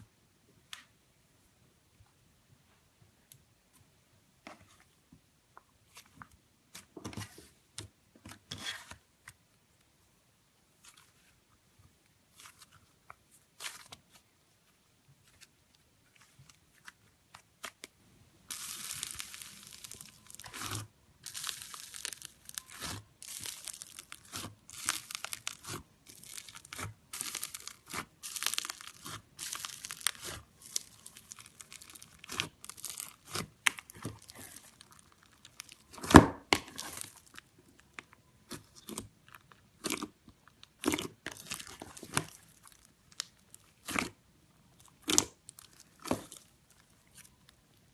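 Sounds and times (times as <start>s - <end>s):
slime crackling and popping: 18.5s - 47.6s.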